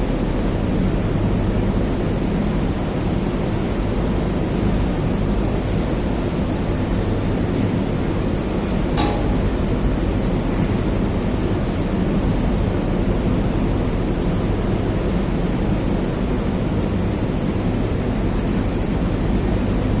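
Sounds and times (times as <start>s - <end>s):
low hum: 8.6s - 10.8s
sharp click: 9.0s - 9.8s.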